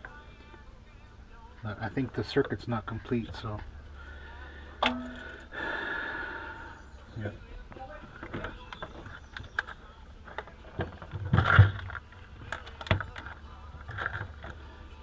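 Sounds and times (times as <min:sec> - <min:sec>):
handling clicks and knocks: 0:08.2 - 0:14.6.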